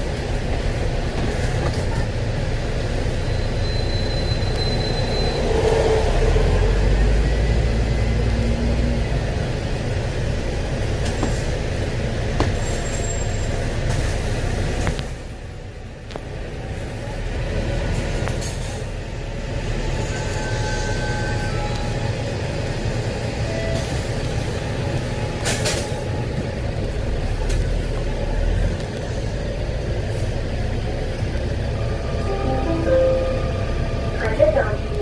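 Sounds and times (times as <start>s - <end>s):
bus engine and road rumble: 0.0s - 35.0s.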